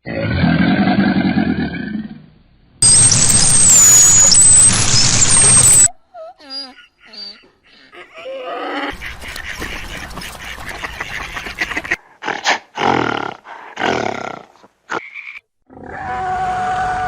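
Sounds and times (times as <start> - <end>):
big cat roaring and growling: 0.0 - 2.3, 15.7 - 16.8.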